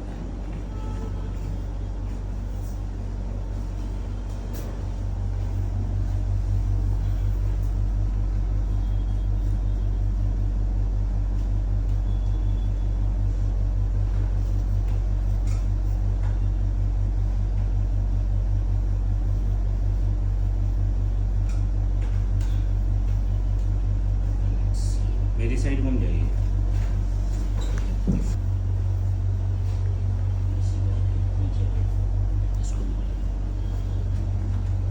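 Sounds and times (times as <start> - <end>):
pulsing mechanical hum: 0.0 - 34.9.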